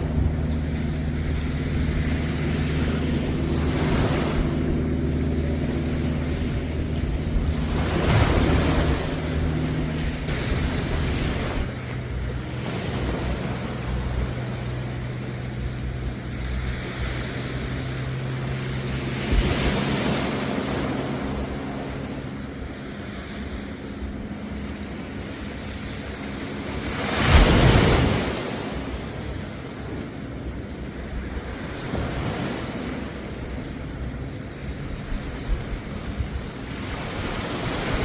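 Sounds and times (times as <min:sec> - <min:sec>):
steady low hum: 0:00.0 - 0:38.0
waves breaking on beach: 0:00.0 - 0:38.0.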